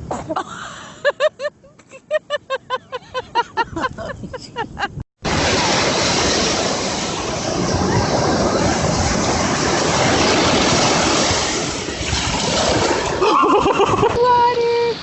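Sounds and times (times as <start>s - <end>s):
sea waves and surf rushing: 5.2s - 15.0s.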